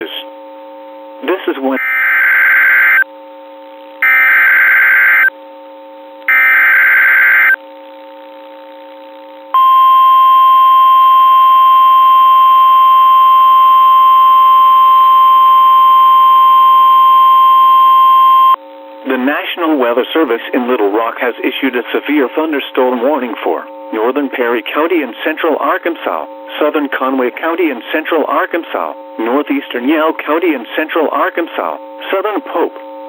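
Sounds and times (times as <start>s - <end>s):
single-pitch warning alarm tone: 1.8s - 3.1s, 4.0s - 5.3s, 6.3s - 7.6s, 9.6s - 18.6s.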